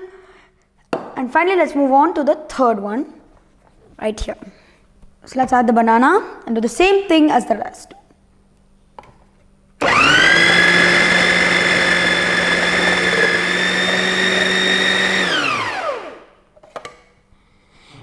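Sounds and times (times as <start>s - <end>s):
mixer grinder motor whine: 9.8s - 16.4s.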